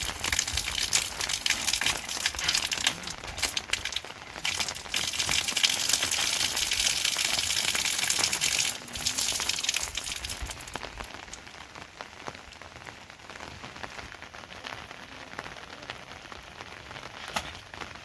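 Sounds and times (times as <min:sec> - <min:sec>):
rain drops ticking: 0:00.0 - 0:18.0.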